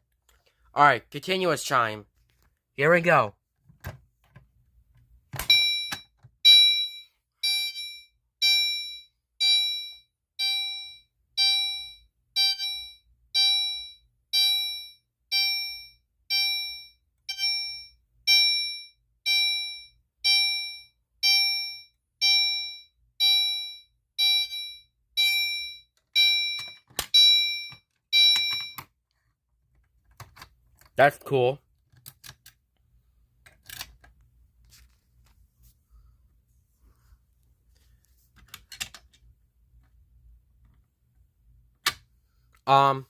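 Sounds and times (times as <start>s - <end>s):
fire alarm electronic ding: 5.4s - 28.9s.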